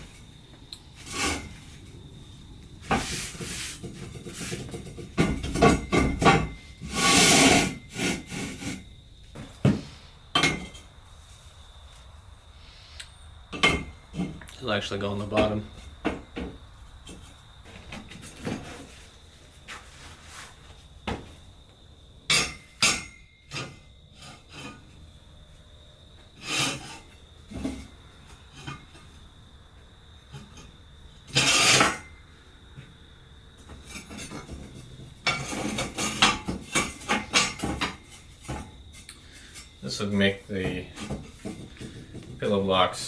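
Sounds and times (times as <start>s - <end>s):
metal scrape: 1.0s - 1.8s, 6.4s - 8.8s, 22.3s - 24.9s, 26.4s - 27.9s, 31.3s - 32.1s.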